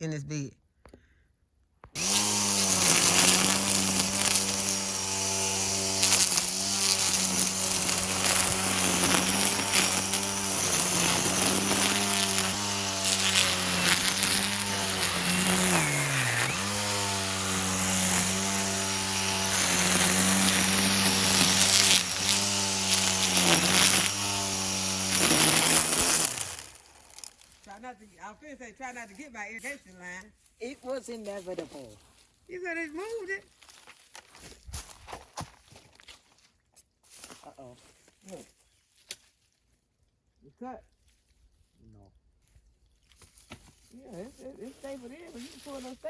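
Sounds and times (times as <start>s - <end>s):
string trimmer cutting vines: 1.9s - 27.9s, 43.2s - 46.0s.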